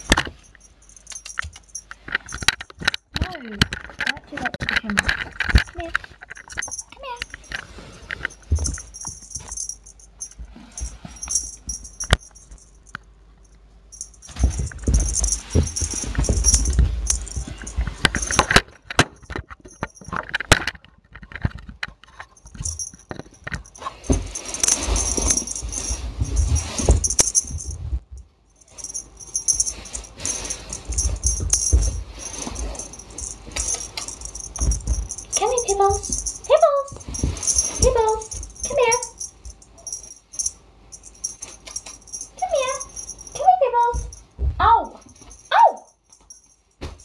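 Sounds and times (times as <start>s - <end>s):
light metallic jingling: 0.0s - 3.1s, 5.0s - 47.0s
sharp clicks and knocks: 0.0s - 9.6s, 14.2s - 25.5s
rustling: 0.0s - 47.0s.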